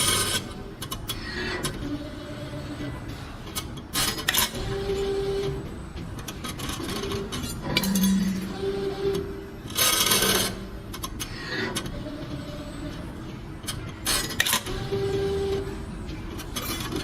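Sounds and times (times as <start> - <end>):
machine motor whine and hum: 0.0 - 17.0.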